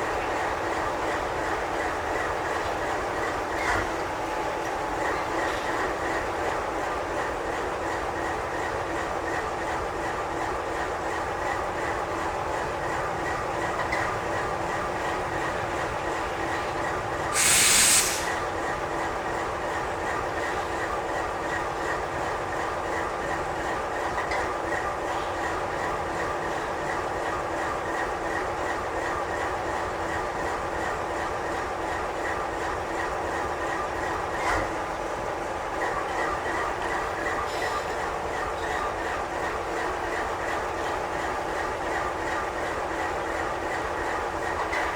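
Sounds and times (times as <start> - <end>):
train rail rumble: 0.0 - 44.9
short loud hiss: 17.4 - 18.4.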